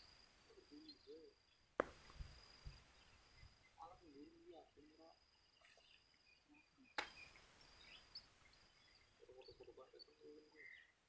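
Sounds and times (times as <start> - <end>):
faint high chirps: 0.0 - 11.0
faint high-pitched hiss: 0.0 - 11.0
sharp click: 7.0 - 7.2.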